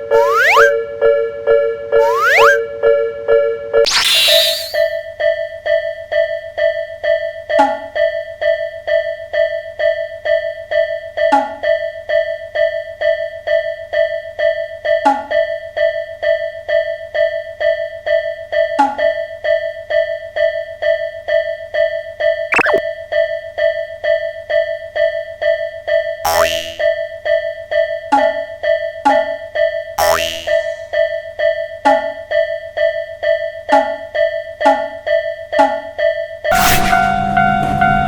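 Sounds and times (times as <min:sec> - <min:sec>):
level crossing alarm dinging: 0:00.0 - 0:04.9, 0:36.5 - 0:38.0
short falling sweep: 0:03.9 - 0:04.9.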